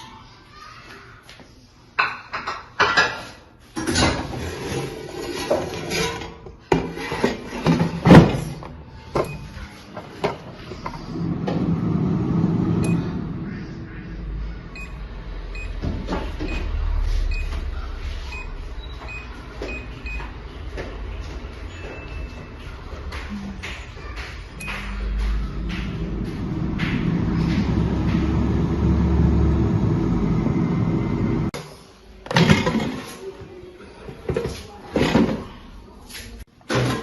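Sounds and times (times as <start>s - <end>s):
kitchen knocks and clatters: 2.0s - 11.6s, 31.5s - 33.3s, 34.1s - 35.6s, 36.3s - 37.0s.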